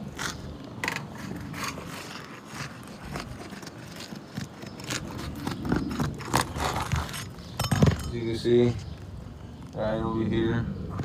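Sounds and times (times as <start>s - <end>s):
tool scraping under roof shingles: 0.0s - 8.0s.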